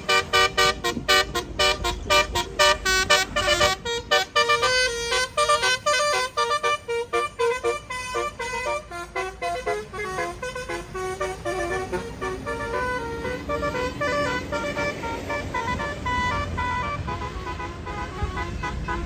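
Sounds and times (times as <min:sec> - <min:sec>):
musical bus horn melody: 0:00.0 - 0:19.0.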